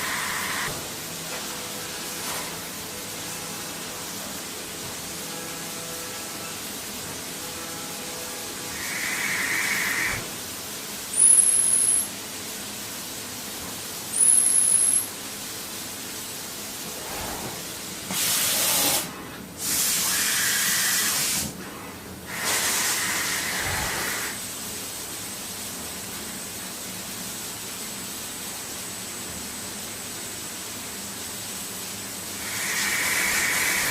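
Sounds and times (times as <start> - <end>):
machine hissing: 0.0 - 0.8, 8.7 - 10.4, 22.3 - 24.4, 32.4 - 33.9.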